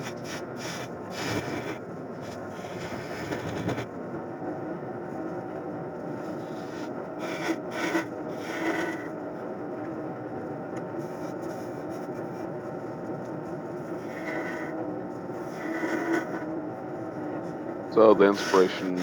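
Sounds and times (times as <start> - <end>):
turning tool scraping wood: 0.0 - 3.9, 6.3 - 9.1, 13.6 - 16.5, 17.4 - 19.0
lathe motor hum: 0.0 - 19.0.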